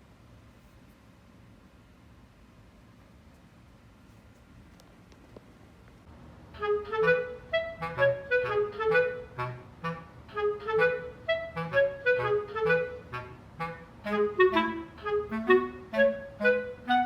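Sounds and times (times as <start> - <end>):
bouncy woodwind tune: 6.6 - 17.0.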